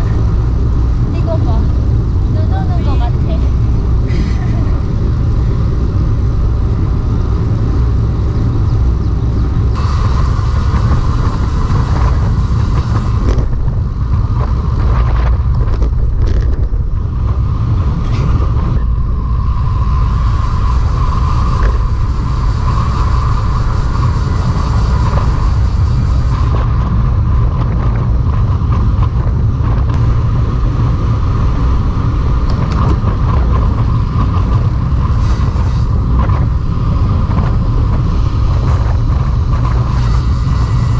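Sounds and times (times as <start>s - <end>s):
wind rumble on microphone: 0.0s - 40.9s.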